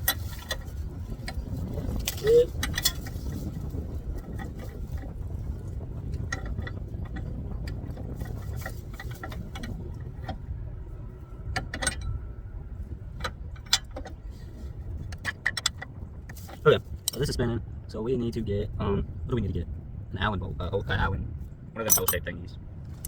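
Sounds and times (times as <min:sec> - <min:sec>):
steady low rumble: 0:00.0 - 0:23.0
metallic clinks of hand tools: 0:21.8 - 0:22.3.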